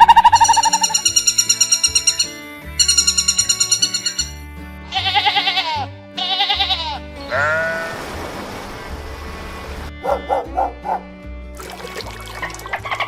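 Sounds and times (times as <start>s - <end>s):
background music: 0.0s - 13.0s
quavering bleat-like animal call: 4.8s - 8.2s.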